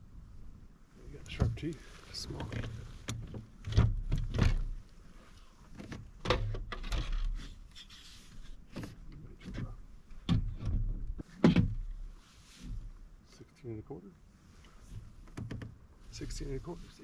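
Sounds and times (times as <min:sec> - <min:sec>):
knocks and scrapes on plastic kayak: 0:02.3 - 0:04.8, 0:05.7 - 0:13.0.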